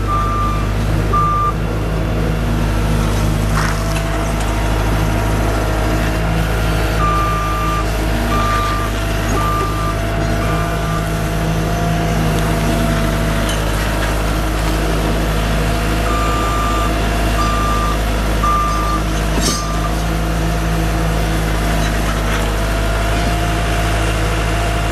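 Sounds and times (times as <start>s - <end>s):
diesel engine running: 0.0s - 24.9s
reverse alarm beeping: 0.1s - 1.6s, 7.0s - 11.1s, 16.1s - 20.0s.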